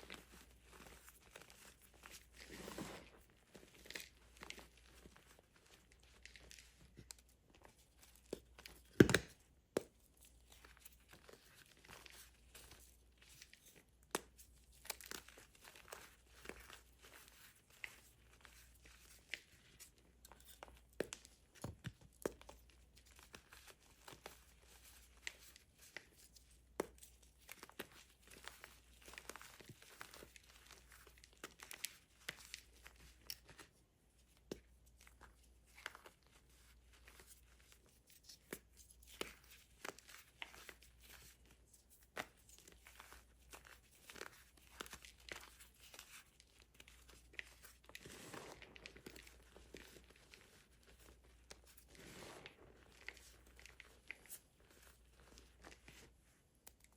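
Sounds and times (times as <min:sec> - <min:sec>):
chalk crunching and crumbling: 0:35.0 - 0:56.9.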